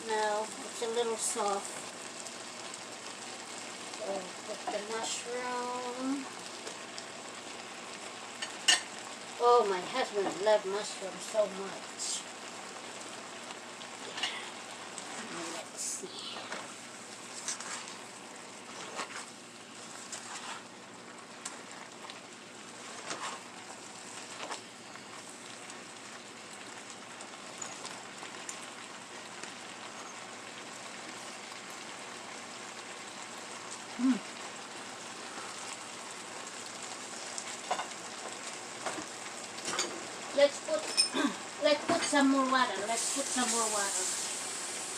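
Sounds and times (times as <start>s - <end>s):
food sizzling in a pot: 0.0s - 44.9s.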